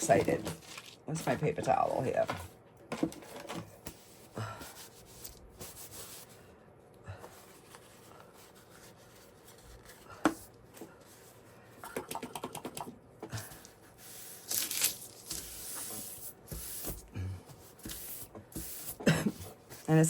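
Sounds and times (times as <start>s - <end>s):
paper rustling and rubbing: 0.0s - 2.3s, 7.5s - 10.1s.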